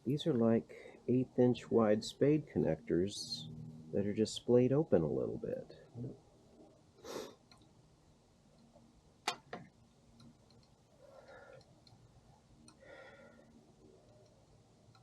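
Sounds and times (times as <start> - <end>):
small parts clicking and tapping: 8.6 - 12.0, 12.6 - 15.0.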